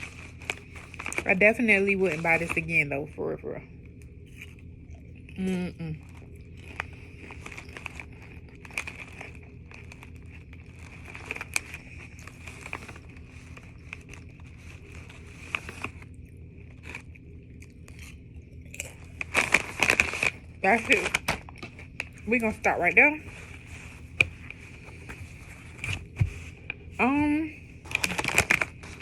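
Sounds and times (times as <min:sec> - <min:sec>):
chewing crunchy potato chips: 0:00.0 - 0:02.7, 0:03.9 - 0:22.3, 0:27.8 - 0:29.0.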